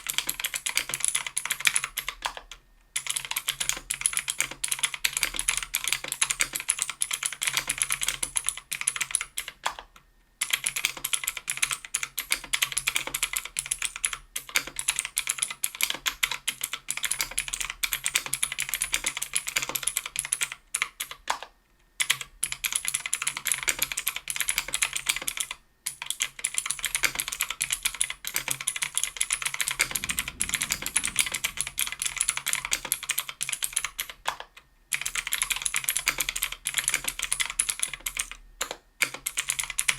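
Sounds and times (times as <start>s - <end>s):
fast typing on mechanical keyboard: 10.4s - 15.6s, 39.0s - 39.9s.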